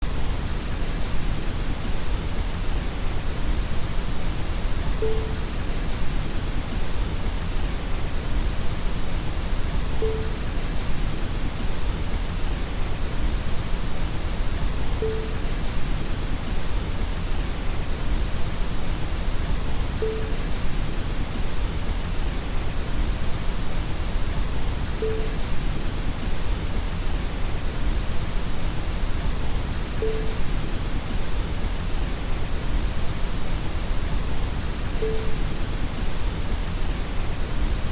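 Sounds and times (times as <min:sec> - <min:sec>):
static hiss: 0:00.1 - 0:37.9
short mid-pitched beep: 0:05.0 - 0:05.5, 0:10.0 - 0:10.4, 0:15.0 - 0:15.5, 0:20.0 - 0:20.5, 0:25.0 - 0:25.4, 0:30.0 - 0:30.4, 0:35.0 - 0:35.4.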